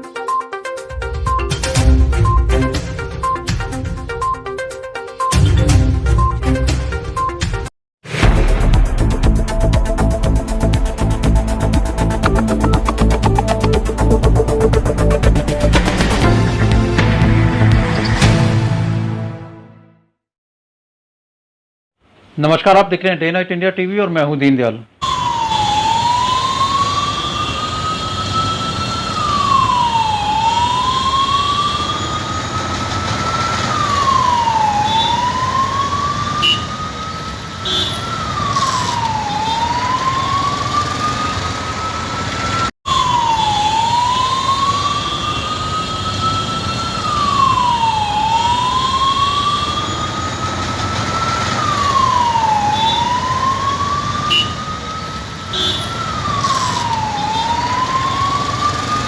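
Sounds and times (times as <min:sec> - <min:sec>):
ambulance siren wailing: 0:00.0 - 0:05.4, 0:10.6 - 0:17.1, 0:25.0 - 0:59.0.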